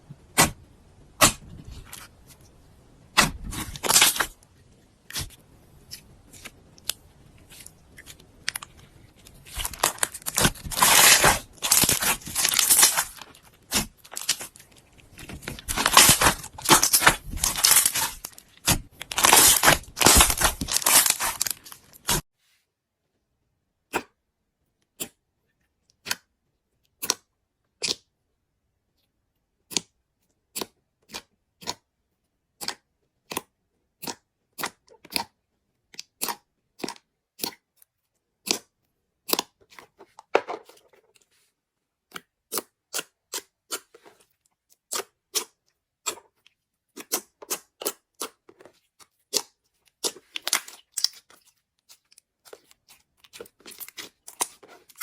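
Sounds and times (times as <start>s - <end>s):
slime crackling: 5.1s - 22.2s.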